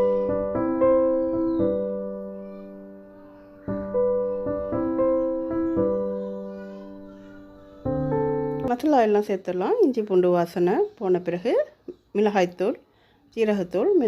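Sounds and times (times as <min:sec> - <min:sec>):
slow keyboard chords: 0:00.0 - 0:08.7.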